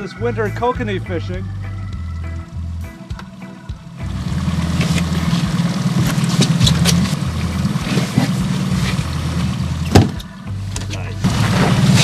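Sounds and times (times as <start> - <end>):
boat motor running: 0.0 - 12.0
clatter: 4.6 - 12.0.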